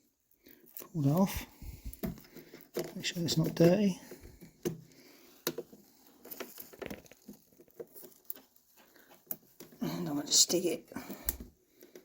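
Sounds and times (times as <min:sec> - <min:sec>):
hands handling small plastic parts: 0:00.4 - 0:09.8.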